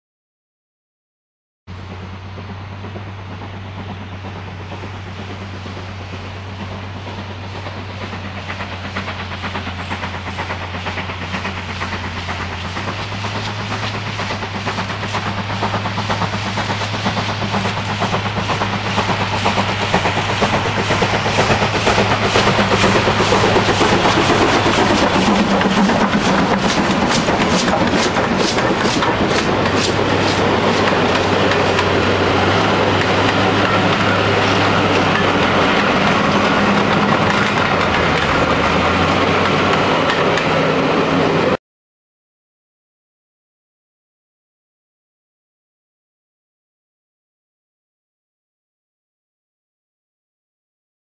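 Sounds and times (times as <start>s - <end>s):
steam train rhythmic beat: 1.9s - 41.5s.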